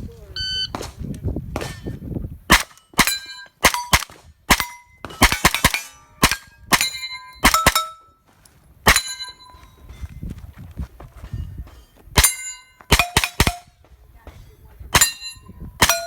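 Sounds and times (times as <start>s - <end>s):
steel target clanging: 1.6s - 8.2s, 8.9s - 9.8s, 11.3s - 16.0s
rapid gunshots: 2.5s - 7.8s, 12.9s - 13.7s.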